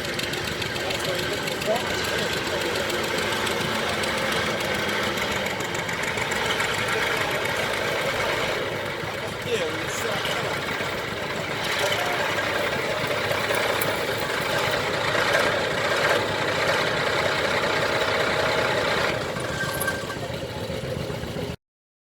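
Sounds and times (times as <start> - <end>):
tractor engine running: 0.0 - 21.6.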